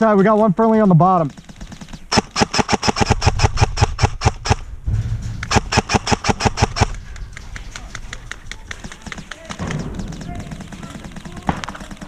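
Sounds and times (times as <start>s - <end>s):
airsoft gun rapid shots: 1.2s - 4.7s, 5.4s - 7.0s, 7.8s - 12.0s.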